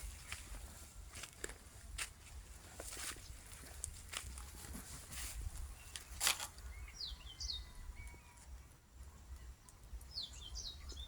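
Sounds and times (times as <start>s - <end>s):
small bird chirping: 5.6s - 11.0s.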